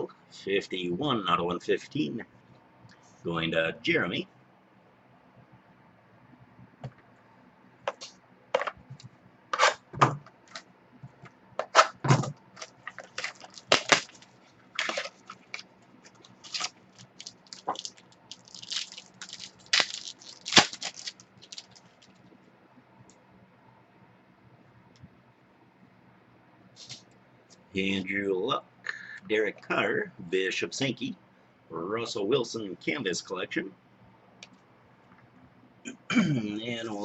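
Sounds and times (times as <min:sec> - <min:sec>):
card packaging crinkling and tearing: 0:12.6 - 0:22.2.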